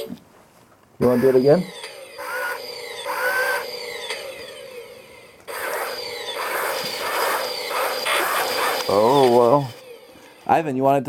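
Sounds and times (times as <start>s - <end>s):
gliding electronic tones: 1.2s - 10.6s
toy robot motor whirring: 2.1s - 4.5s, 5.5s - 10.1s.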